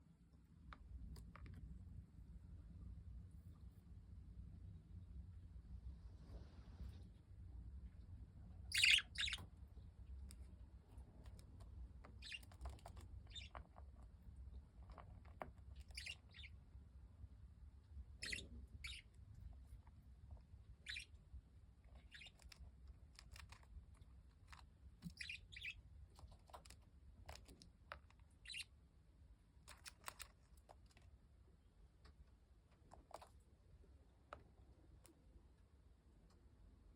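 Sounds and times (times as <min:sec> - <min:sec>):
budgie chirping and clicking: 0:08.7 - 0:09.6, 0:11.1 - 0:14.0, 0:14.8 - 0:16.6, 0:18.2 - 0:19.3, 0:20.8 - 0:21.2, 0:21.9 - 0:23.7, 0:24.4 - 0:28.7.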